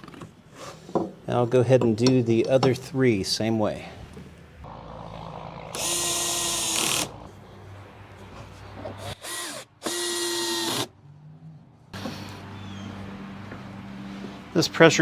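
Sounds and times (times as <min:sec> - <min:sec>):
drill motor whining: 0:05.7 - 0:07.2, 0:09.0 - 0:10.9.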